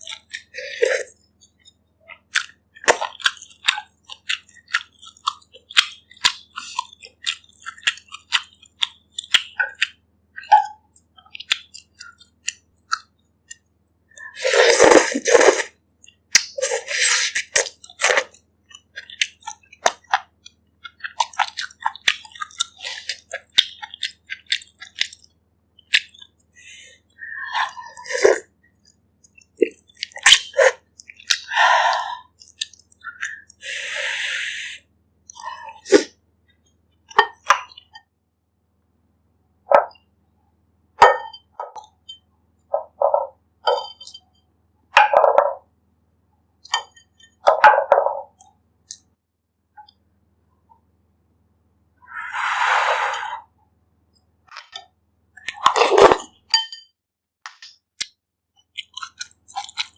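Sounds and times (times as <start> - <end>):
wet chewing and mouth clicks: 0.0 - 33.6, 35.2 - 38.1, 57.5 - 59.9
airy sounds: 52.0 - 53.6.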